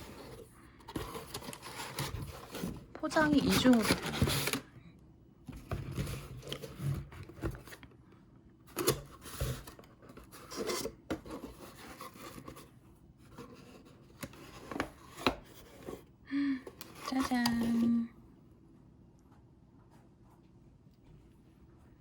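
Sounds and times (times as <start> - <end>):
packaging rustling and scraping: 0.0 - 4.7, 5.5 - 7.9, 8.7 - 16.1, 16.8 - 18.1.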